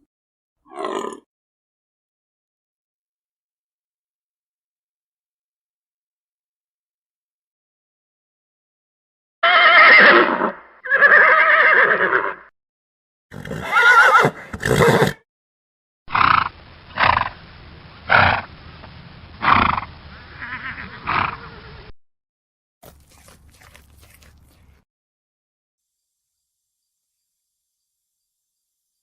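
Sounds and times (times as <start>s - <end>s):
horses whinnying: 9.4s - 12.4s, 13.3s - 15.2s.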